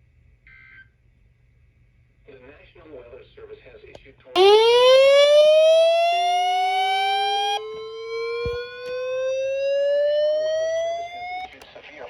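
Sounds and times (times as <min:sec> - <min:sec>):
second rising siren wail: 0:04.4 - 0:11.6
warning siren winding up: 0:04.4 - 0:11.6.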